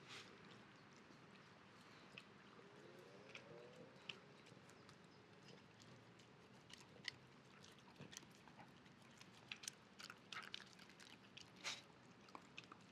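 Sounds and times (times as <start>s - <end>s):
dog chewing grass: 0.4s - 12.9s
crisp crunching ticks: 3.3s - 12.9s.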